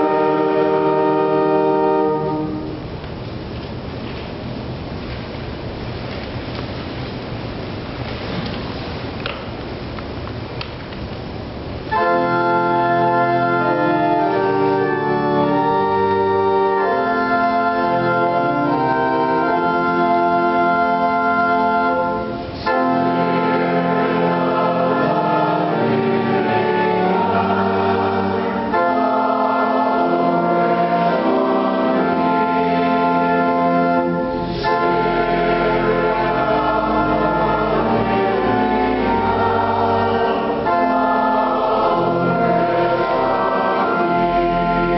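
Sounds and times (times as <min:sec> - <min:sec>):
organ playing chords: 0:00.0 - 0:02.9, 0:11.9 - 0:44.9.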